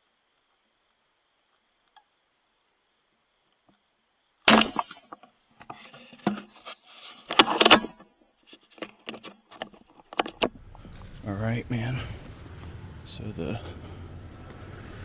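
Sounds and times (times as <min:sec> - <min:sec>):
clattering and rustling knocks: 0:10.2 - 0:15.0.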